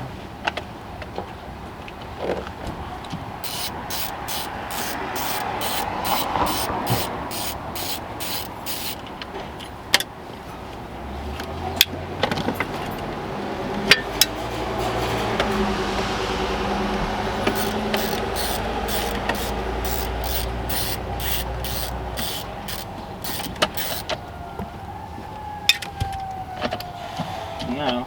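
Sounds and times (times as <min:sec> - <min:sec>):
hand tool rasping on screws: 0:03.4 - 0:09.0, 0:17.4 - 0:24.2
sharp clicks: 0:03.4 - 0:09.0, 0:17.4 - 0:24.2.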